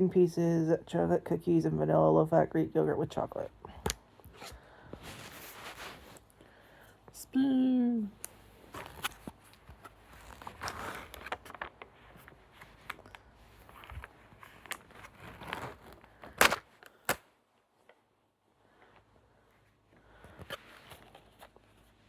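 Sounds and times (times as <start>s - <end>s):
plastic packaging crackling: 8.7s - 17.2s
sharp plastic snaps: 16.2s - 17.3s.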